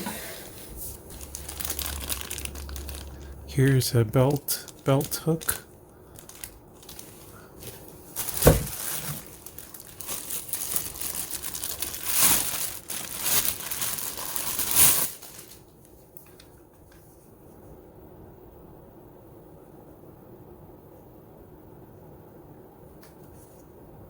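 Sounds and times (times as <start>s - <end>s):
packaging crinkling and rustling: 0.8s - 17.0s.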